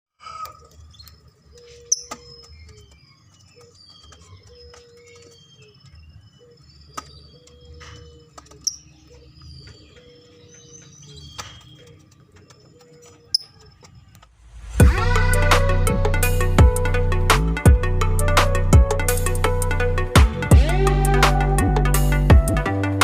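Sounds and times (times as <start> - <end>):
lovebirds chirping: 0.2 - 15.5.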